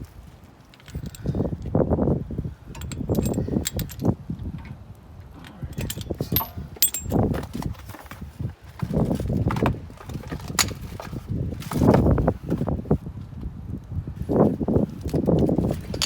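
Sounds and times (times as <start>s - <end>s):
metal brake parts clinking: 0.6s - 1.6s, 2.7s - 4.7s, 5.4s - 12.1s, 15.6s - 16.0s.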